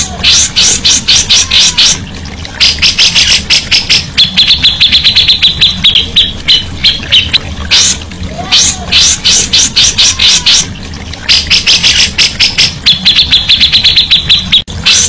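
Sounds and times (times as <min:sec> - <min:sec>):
songbird chirping and ticking: 0:00.0 - 0:15.0.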